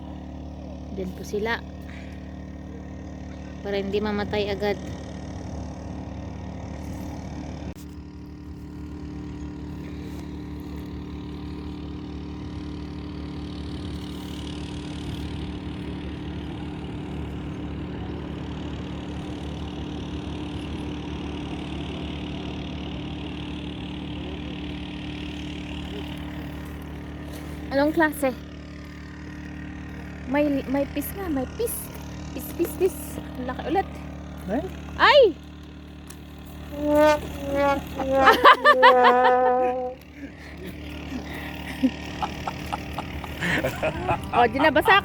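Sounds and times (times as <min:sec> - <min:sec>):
motor humming: 0:00.0 - 0:45.0.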